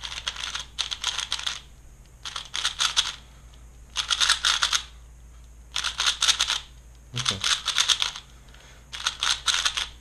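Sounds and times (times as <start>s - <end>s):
plastic puzzle cube turning clicks: 9.0s - 9.9s.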